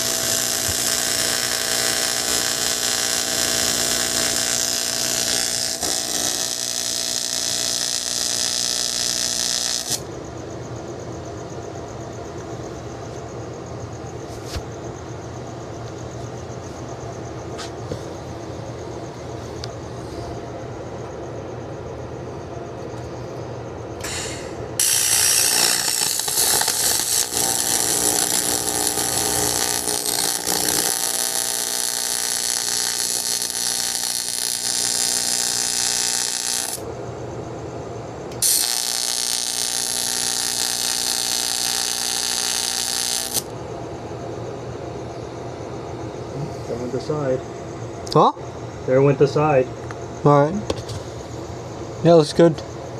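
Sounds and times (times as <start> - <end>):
welding arc hiss: 0.0 - 10.1, 24.0 - 36.9, 38.3 - 43.5.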